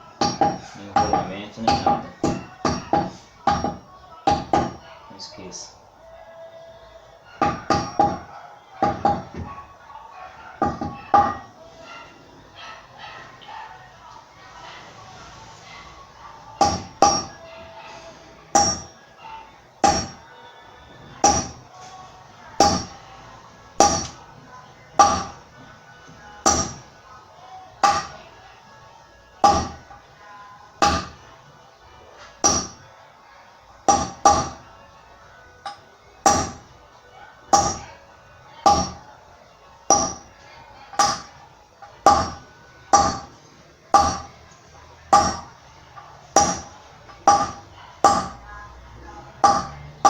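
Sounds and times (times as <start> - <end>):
hammer striking metal: 0.2 - 4.8, 7.4 - 9.4, 10.6 - 11.5, 16.6 - 17.4, 18.5 - 19.0, 19.8 - 20.2, 21.2 - 21.6, 22.6 - 23.0, 23.8 - 24.2, 25.0 - 25.4, 26.4 - 26.9, 27.8 - 28.2, 29.4 - 29.9, 30.8 - 31.2, 32.4 - 32.8, 33.9 - 34.6, 35.6 - 36.7, 37.5 - 37.9, 38.7 - 39.0, 39.9 - 40.3, 41.0 - 44.4, 45.1 - 48.4, 49.4 - 49.8.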